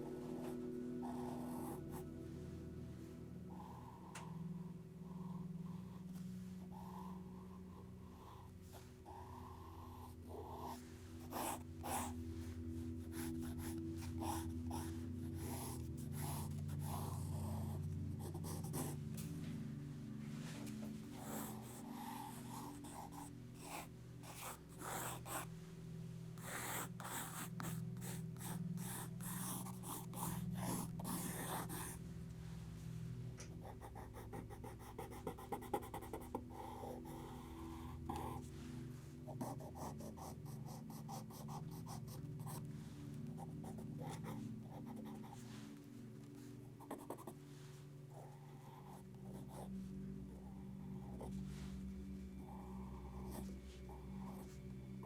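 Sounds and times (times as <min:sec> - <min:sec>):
low hum: 0:00.0 - 0:26.4, 0:30.0 - 0:34.8
pencil scratching on paper: 0:00.2 - 0:02.1, 0:06.7 - 0:19.0, 0:20.5 - 0:25.5, 0:26.4 - 0:32.0, 0:33.6 - 0:38.5, 0:39.3 - 0:42.7, 0:43.4 - 0:45.6, 0:46.7 - 0:47.4, 0:48.2 - 0:49.7.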